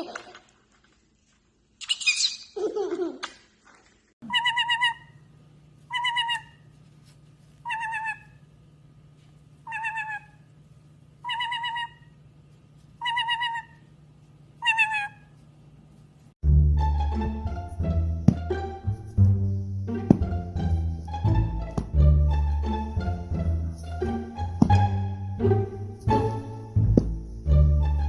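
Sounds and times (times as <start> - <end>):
parrot warbling call: 4.2 - 5.2, 5.9 - 6.6, 7.6 - 8.4, 9.7 - 10.5, 11.2 - 12.1, 13.0 - 13.9, 14.6 - 15.3.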